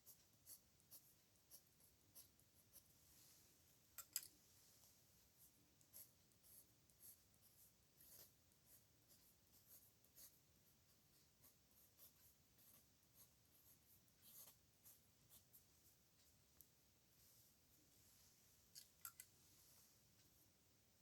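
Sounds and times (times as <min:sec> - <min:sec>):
pen scratching on paper: 0:00.0 - 0:02.9, 0:05.8 - 0:15.6.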